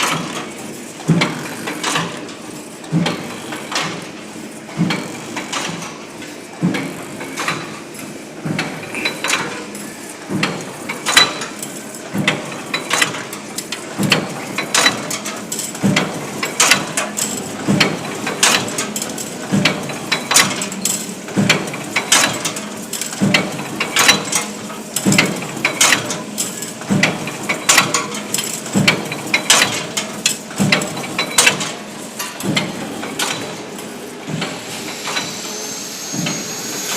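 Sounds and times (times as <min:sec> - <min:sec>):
machine mechanical knocking: 0:00.0 - 0:05.9, 0:06.6 - 0:07.8, 0:08.4 - 0:09.6, 0:10.2 - 0:11.5, 0:12.1 - 0:22.6, 0:23.2 - 0:26.2, 0:26.8 - 0:33.6, 0:34.2 - 0:35.3.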